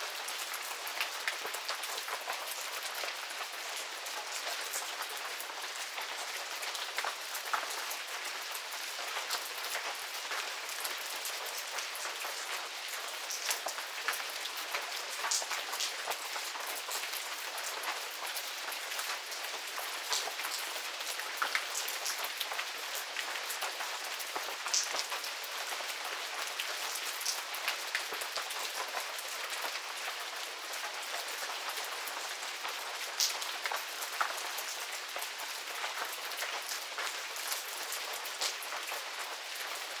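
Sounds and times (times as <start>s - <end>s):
sharp raindrop ticks: 24.7s - 25.3s, 33.2s - 34.4s.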